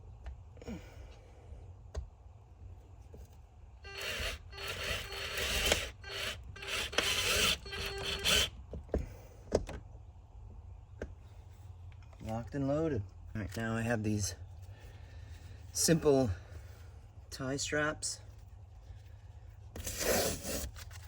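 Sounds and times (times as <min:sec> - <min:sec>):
cordless drill grinding: 0:03.9 - 0:08.6.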